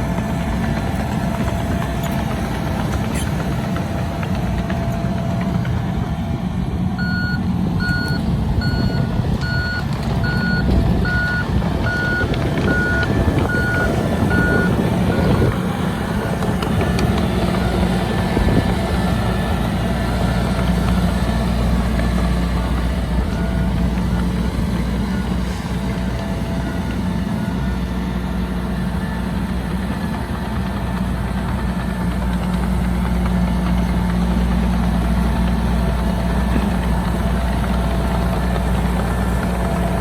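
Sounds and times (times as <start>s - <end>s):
diesel engine rumbling: 0.0s - 40.0s
backup alarm beeping: 7.0s - 16.3s.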